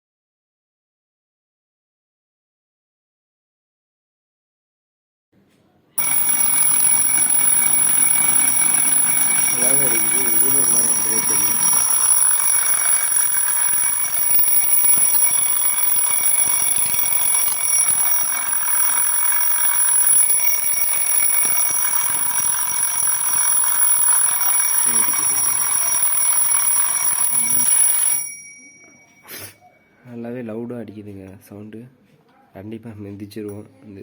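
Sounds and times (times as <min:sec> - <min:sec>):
alarm clock ringing: 0:06.0 - 0:29.3.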